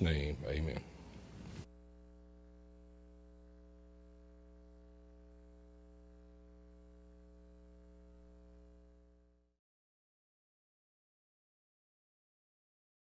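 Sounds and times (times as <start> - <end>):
faint electrical hum: 0.0 - 9.6.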